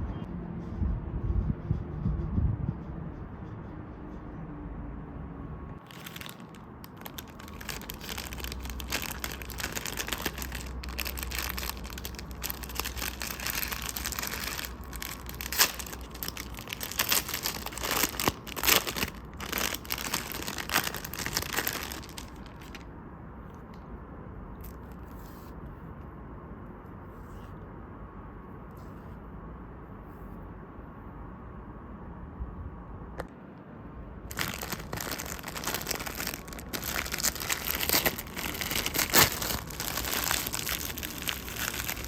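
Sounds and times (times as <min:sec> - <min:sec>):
plastic packaging crinkling: 0:05.8 - 0:22.8, 0:34.3 - 0:42.0.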